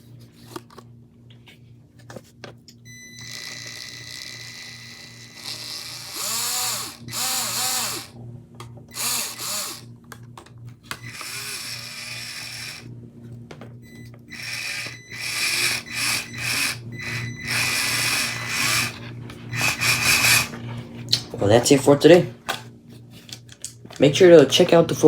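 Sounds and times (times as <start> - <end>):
electric motor whining: 3.1 - 8.2, 8.9 - 9.9, 10.9 - 12.9, 14.3 - 20.6.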